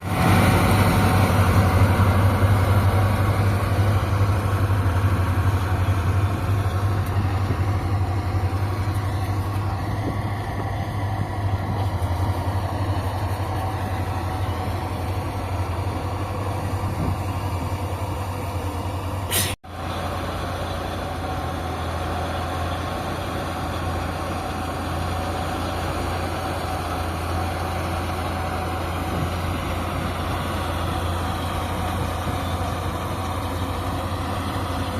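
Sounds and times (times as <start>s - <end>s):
tractor diesel engine droning: 0.0s - 34.9s.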